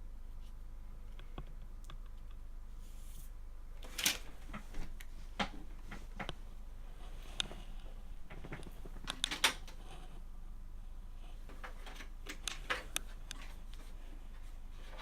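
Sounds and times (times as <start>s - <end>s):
cables and plastic parts clicking: 3.8s - 6.5s, 7.1s - 10.0s, 11.2s - 15.0s.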